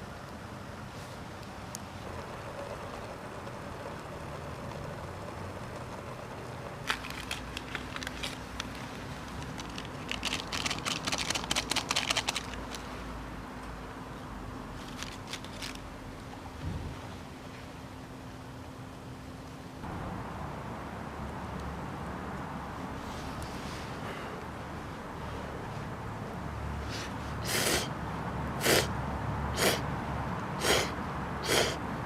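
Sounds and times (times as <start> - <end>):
road traffic noise: 0.0 - 32.0
crackling: 1.1 - 13.7, 14.7 - 16.1
sharp clicks: 9.4 - 12.8.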